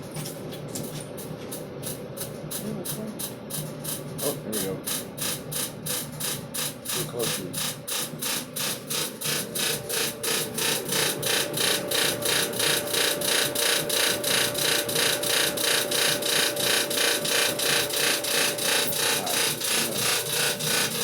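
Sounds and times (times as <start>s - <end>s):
dryer hum: 0.0s - 21.0s
clothes dryer grinding: 2.5s - 21.0s.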